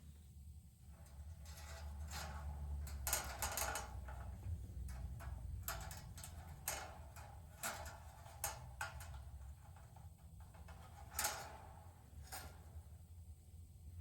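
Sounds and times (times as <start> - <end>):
steady low hum: 0.0 - 14.0
metallic clicks and rattles: 1.0 - 12.7.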